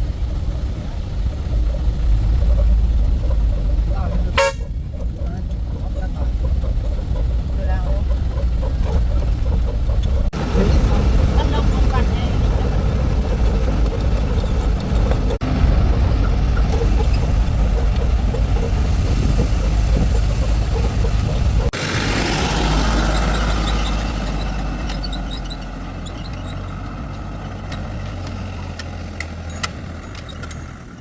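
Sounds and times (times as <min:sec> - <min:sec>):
heavy vehicle engine rumbling: 0:00.0 - 0:31.0.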